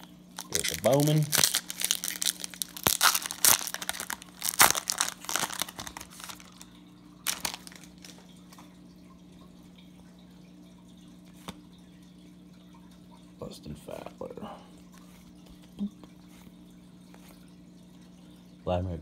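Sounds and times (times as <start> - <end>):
wrapper crinkling and tearing: 0.0 - 8.3.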